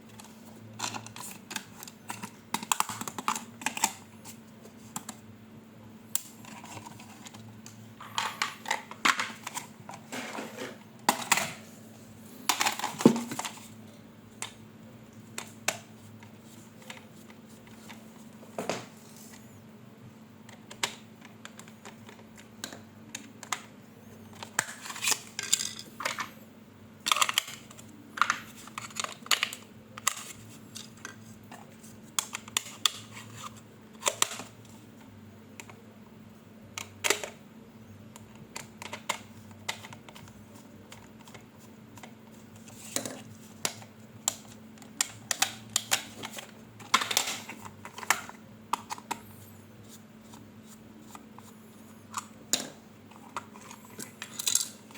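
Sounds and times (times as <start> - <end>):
plastic parts clicking: 0.2 - 4.0, 27.0 - 31.1, 36.8 - 37.4, 38.2 - 40.3, 42.7 - 49.2, 52.1 - 54.9.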